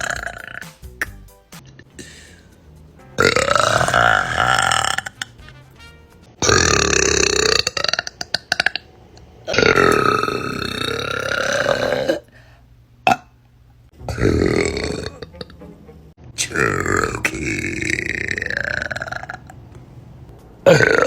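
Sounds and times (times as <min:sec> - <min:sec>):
women burping: 0:03.2 - 0:05.2, 0:09.5 - 0:12.3, 0:20.6 - 0:21.0.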